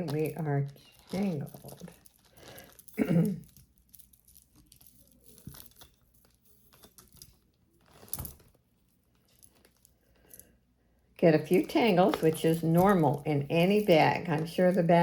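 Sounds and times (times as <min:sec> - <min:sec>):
jewelry chains clicking: 0:00.0 - 0:08.4, 0:11.5 - 0:15.0
plastic bag crinkle: 0:00.0 - 0:10.5.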